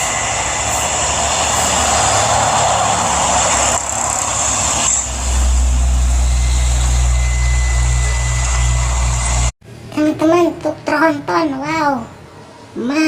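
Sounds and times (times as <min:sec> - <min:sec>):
heavy truck engine: 0:00.0 - 0:09.5.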